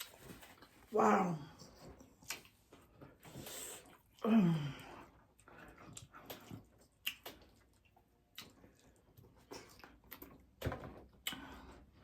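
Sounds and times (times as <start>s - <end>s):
person chewing crunchy taco shells: 3.8s - 12.0s.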